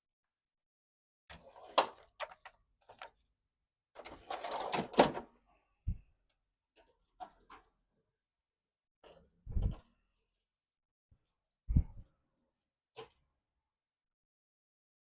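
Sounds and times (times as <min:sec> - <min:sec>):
photocopier parts clicking and knocking: 0:04.0 - 0:05.3.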